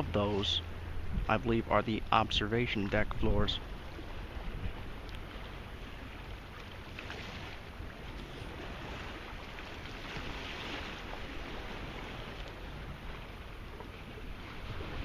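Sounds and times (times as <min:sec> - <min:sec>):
wind noise on microphone: 0:00.8 - 0:05.0.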